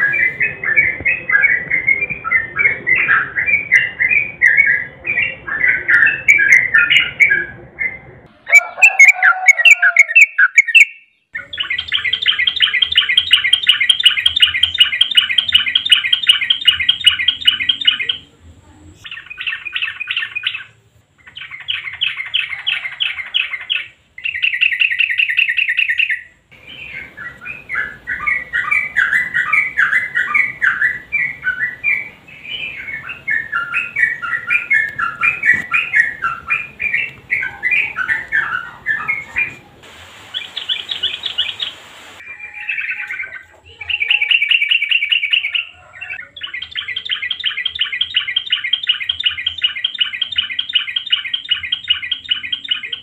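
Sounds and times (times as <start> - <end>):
bird bubbling chattering notes: 40.2 - 42.2.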